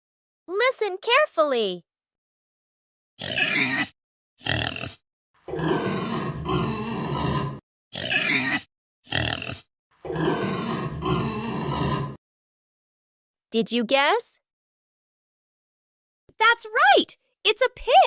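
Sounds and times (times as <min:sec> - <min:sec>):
pig grunting: 0:03.2 - 0:12.2.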